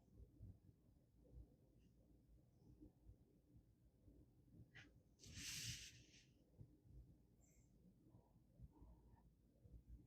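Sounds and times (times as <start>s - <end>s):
hiss: 5.3s - 6.1s.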